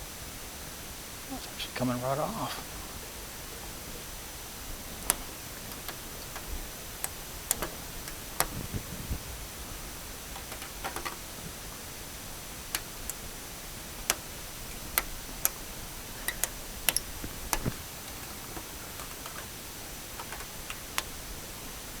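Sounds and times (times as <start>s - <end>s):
steady hiss: 0.0s - 22.0s
light clicks and ticks: 4.6s - 9.2s, 10.3s - 21.6s.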